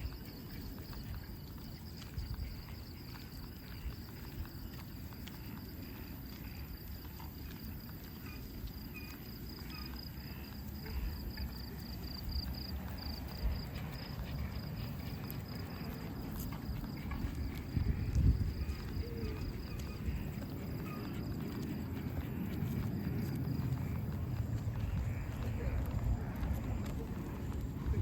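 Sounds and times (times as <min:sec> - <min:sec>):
insects trilling: 0:00.0 - 0:28.0
low rumble: 0:17.1 - 0:28.0.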